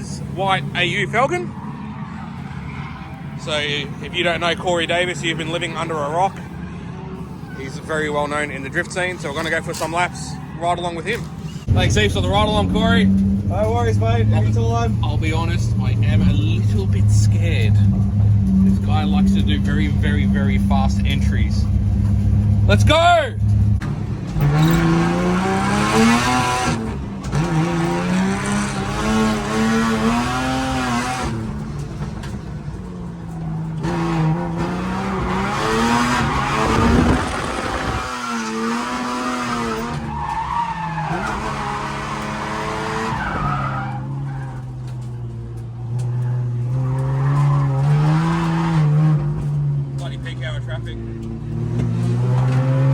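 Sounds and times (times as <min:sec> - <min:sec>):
tyres skidding and squealing: 0:00.0 - 0:52.9
car engine revving: 0:11.1 - 0:52.9.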